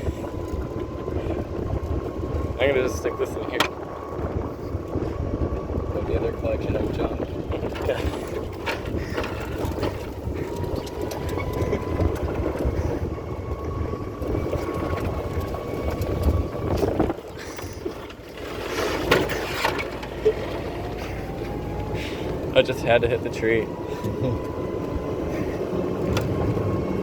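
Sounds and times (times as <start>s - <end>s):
golf cart driving: 0.0s - 27.0s
wind buffeting microphone: 0.0s - 27.0s
cart brushing a tree: 14.2s - 21.6s
thin steady whine: 19.7s - 27.0s.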